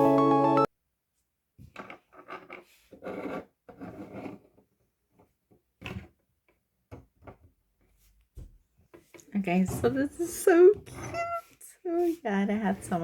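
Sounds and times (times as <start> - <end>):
plastic model scraping on surface: 1.9 - 4.7.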